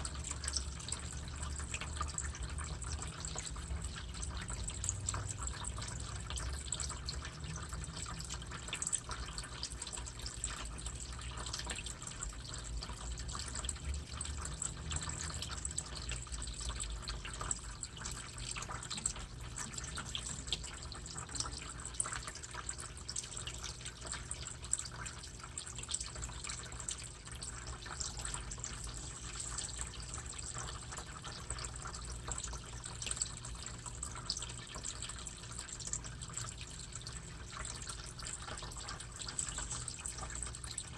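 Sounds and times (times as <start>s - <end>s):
water trickling and dripping: 0.0s - 40.9s.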